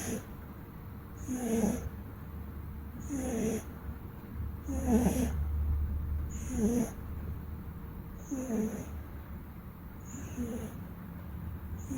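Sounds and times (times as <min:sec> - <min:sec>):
cat snoring: 0:00.0 - 0:00.2, 0:01.2 - 0:01.9, 0:03.0 - 0:03.7, 0:04.6 - 0:05.4, 0:06.3 - 0:07.0, 0:08.2 - 0:09.0, 0:10.0 - 0:10.8.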